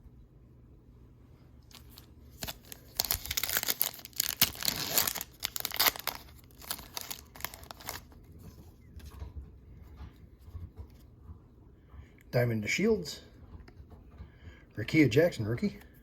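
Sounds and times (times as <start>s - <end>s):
card pack wrapper tearing: 1.7s - 8.1s
wrapper crinkling: 1.7s - 8.2s.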